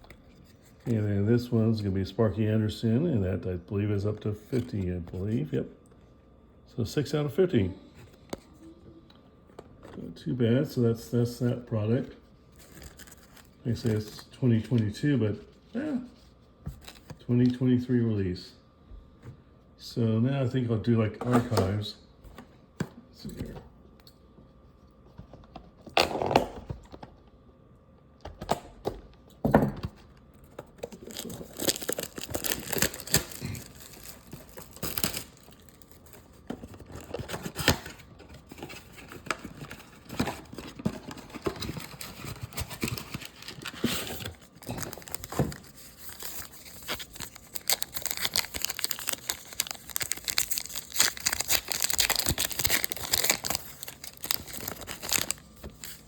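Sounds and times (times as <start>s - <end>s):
packaging tearing: 12.6s - 14.1s, 30.8s - 56.0s
wrappers crinkling: 30.8s - 36.4s, 38.7s - 56.0s.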